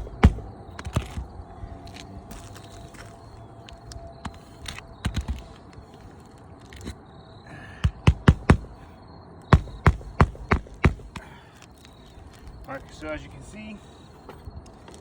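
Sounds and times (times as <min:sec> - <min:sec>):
sharp knocks: 0:00.0 - 0:01.3, 0:07.8 - 0:08.8, 0:09.5 - 0:11.3.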